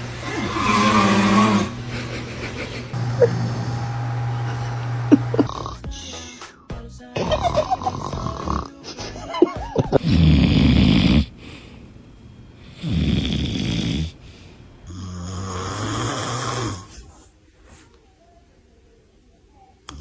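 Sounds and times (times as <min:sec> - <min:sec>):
person snoring: 0:00.2 - 0:02.2, 0:02.9 - 0:06.6, 0:07.2 - 0:11.4, 0:12.6 - 0:14.2, 0:14.9 - 0:17.2.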